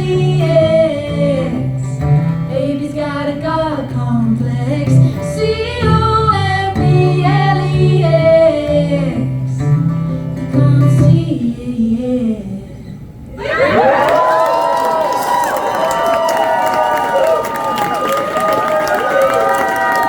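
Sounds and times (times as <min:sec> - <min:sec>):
woman singing: 0:00.0 - 0:09.7, 0:10.4 - 0:12.9.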